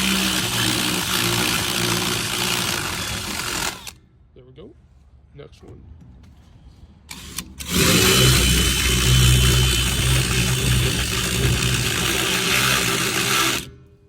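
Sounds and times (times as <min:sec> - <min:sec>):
electric drill boring: 0:00.0 - 0:04.0, 0:07.1 - 0:13.7.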